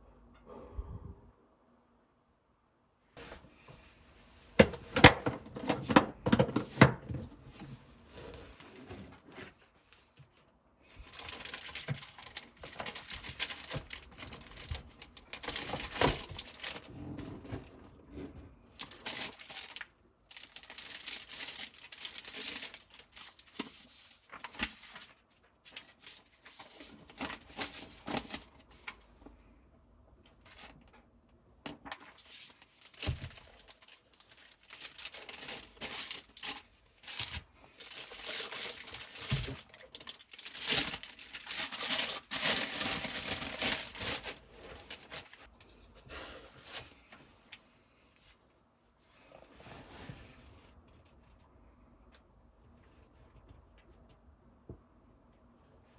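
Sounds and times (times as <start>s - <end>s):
packaging crinkling and tearing: 11.0s - 16.9s, 18.8s - 29.1s, 31.8s - 45.5s.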